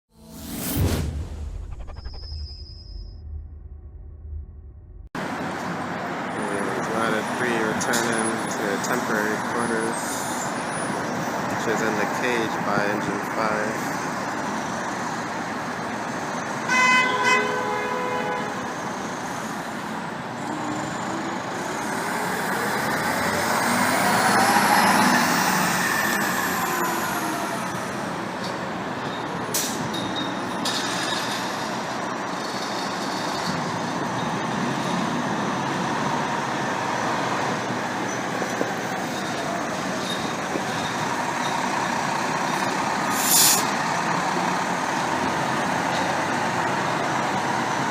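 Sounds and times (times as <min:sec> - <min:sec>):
vehicle horn: 0:16.6 - 0:18.7.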